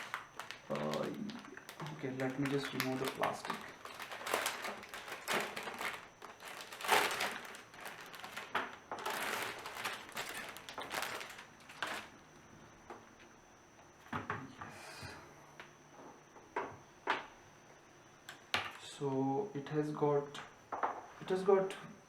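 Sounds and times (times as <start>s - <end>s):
plastic wrapping crinkling: 0.0s - 12.2s.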